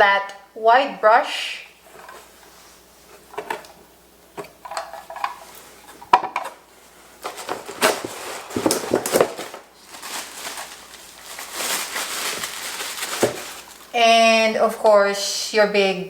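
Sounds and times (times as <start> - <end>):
plastic parts clicking and knocking: 7.3 - 9.6.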